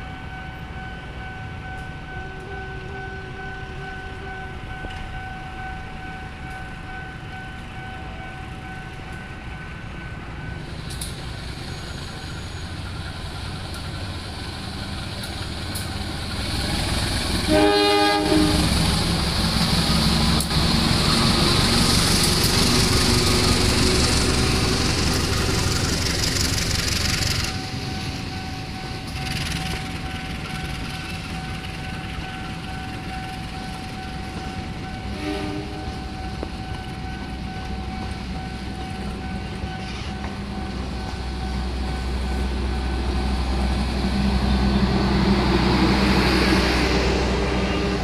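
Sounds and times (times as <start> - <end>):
train rumble: 0.0 - 48.0
train wheel and rail noise: 0.0 - 48.0
train horn blast: 2.1 - 4.8, 17.4 - 19.1, 35.1 - 36.1, 46.2 - 48.0.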